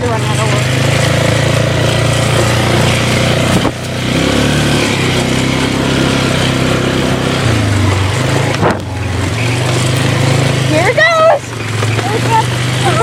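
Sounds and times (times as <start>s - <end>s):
atv engine running: 0.0s - 13.0s.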